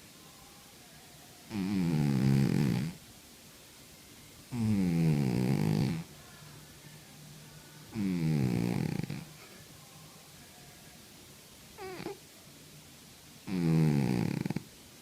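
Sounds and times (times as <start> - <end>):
cat snoring: 1.5 - 3.0, 4.5 - 6.1, 7.9 - 9.4, 11.8 - 12.2, 13.4 - 14.7.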